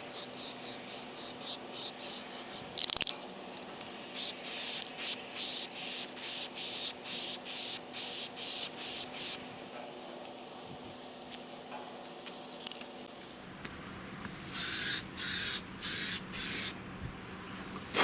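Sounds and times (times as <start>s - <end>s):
spray-paint can hissing: 0.0s - 2.6s, 4.1s - 9.4s, 14.5s - 16.8s.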